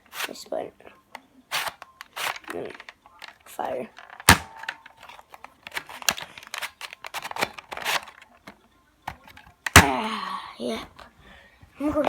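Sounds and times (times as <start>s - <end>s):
plastic toy blaster clicks: 1.5s - 5.0s, 5.6s - 8.2s
plastic rustling: 1.5s - 8.5s.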